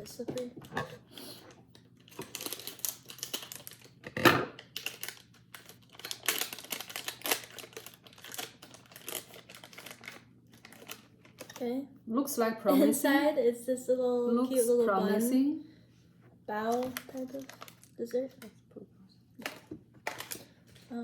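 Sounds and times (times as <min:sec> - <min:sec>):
plastic wrapper crinkling: 0:02.0 - 0:04.0, 0:04.6 - 0:11.6, 0:16.5 - 0:18.5, 0:19.4 - 0:20.9.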